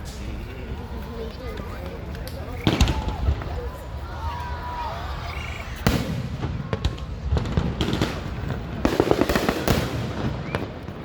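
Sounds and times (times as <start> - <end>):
fireworks crackling: 0.0 - 11.0
firework bang: 5.7 - 11.0.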